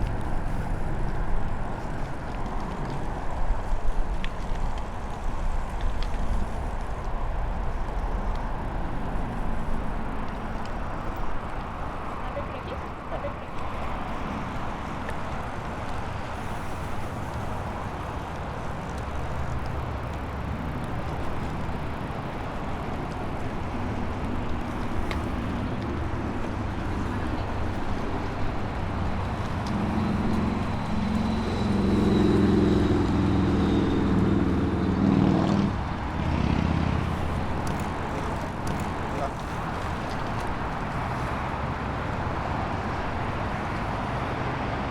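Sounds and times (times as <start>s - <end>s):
low engine hum: 0.0s - 44.9s
wind and road noise: 0.0s - 44.9s.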